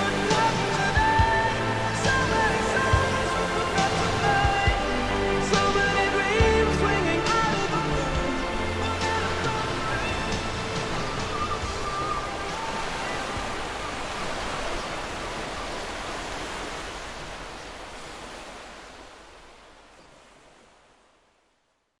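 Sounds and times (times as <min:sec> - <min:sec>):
faint music: 0:00.0 - 0:16.8
water rushing: 0:00.0 - 0:21.7.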